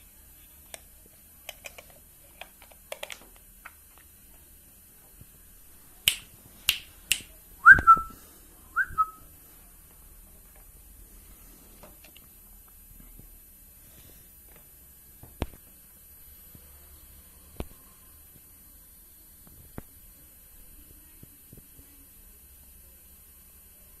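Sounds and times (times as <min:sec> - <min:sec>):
finger snaps: 0:06.0 - 0:08.1
short whistles: 0:07.6 - 0:08.1, 0:08.7 - 0:09.2.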